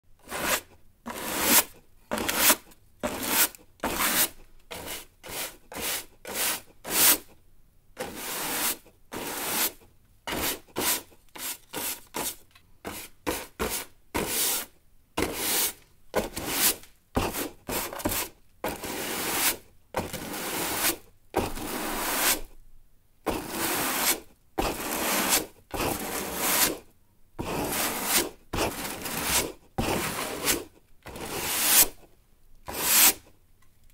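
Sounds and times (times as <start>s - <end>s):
broom bristles sweeping floor: 8.0s - 15.8s, 18.8s - 22.4s, 23.3s - 26.8s, 27.5s - 32.0s, 32.7s - 33.2s.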